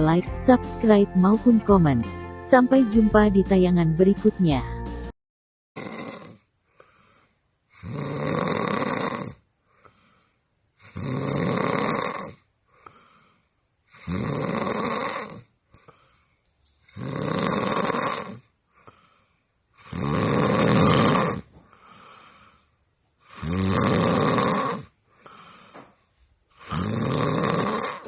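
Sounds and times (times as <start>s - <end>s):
person snoring: 5.8s - 7.0s, 7.7s - 10.1s, 10.8s - 13.1s, 13.9s - 15.9s, 16.9s - 19.0s, 19.8s - 22.6s, 23.2s - 25.7s, 26.6s - 28.0s.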